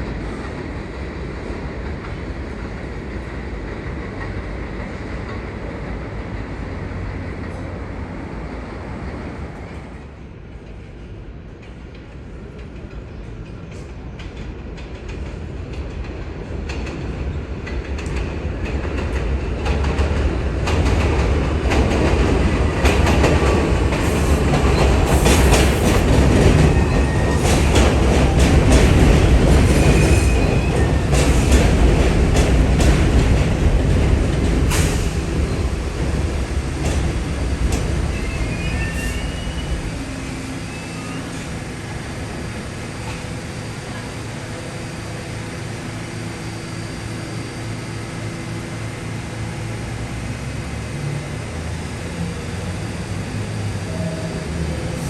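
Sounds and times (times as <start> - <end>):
subway train running: 0.0 - 55.0
thin wheel squeals: 38.2 - 39.9, 40.6 - 41.5.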